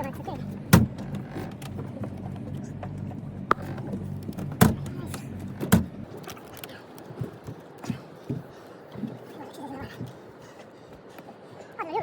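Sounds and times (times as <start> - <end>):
low motor hum: 0.0 - 10.2
sharp knocks and thumps: 0.5 - 6.1.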